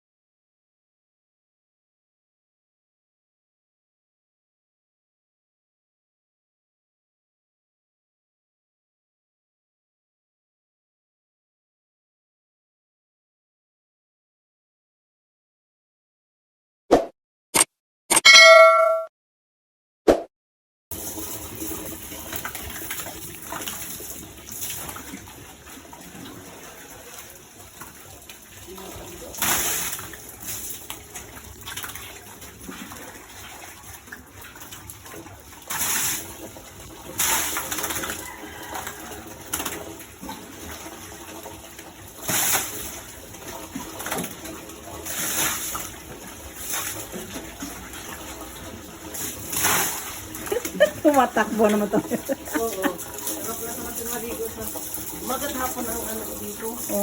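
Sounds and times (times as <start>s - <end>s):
water splashing: 20.9s - 57.0s.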